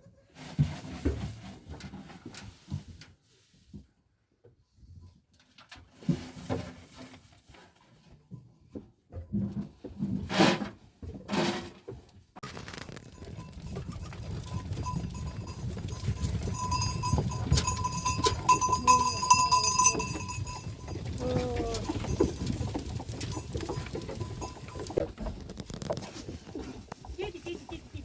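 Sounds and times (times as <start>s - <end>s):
goats bleating: 16.5s - 22.4s
faint high tone: 18.1s - 20.5s, 21.1s - 22.2s.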